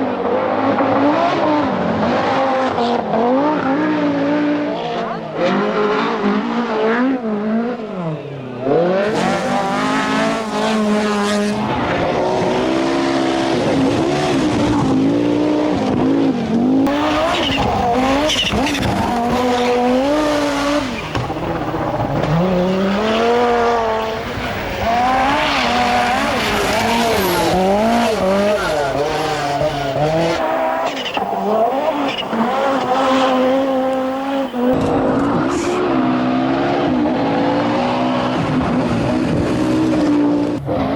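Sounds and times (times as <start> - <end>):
rally car engines revving: 0.0 - 40.9.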